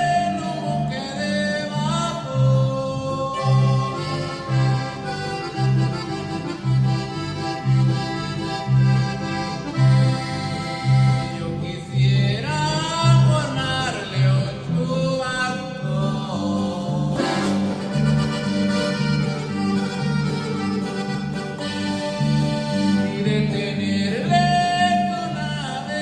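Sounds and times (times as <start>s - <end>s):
sustained melody line: 0.0s - 14.8s, 16.0s - 25.6s
electric bass line: 0.0s - 26.0s.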